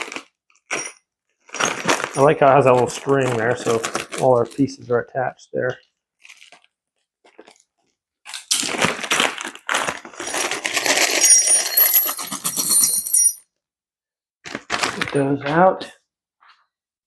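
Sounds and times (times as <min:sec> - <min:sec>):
metal screws clinking: 0:10.2 - 0:13.4.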